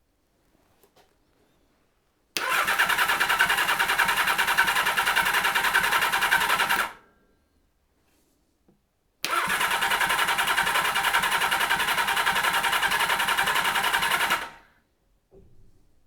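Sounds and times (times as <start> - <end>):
engine cranking on starter: 2.4 - 7.0, 9.2 - 14.7.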